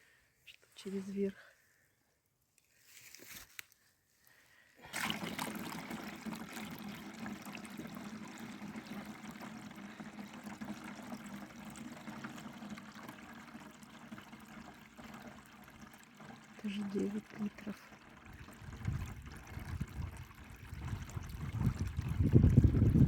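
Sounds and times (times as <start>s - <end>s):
liquid pouring into a container: 4.8s - 23.0s.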